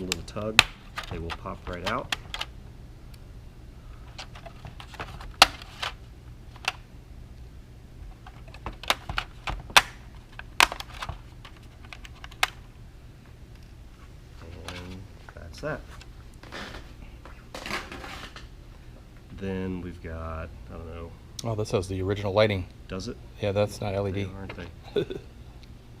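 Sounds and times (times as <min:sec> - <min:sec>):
plastic parts clicking and snapping: 0:00.0 - 0:02.5, 0:04.1 - 0:06.8, 0:08.1 - 0:12.6.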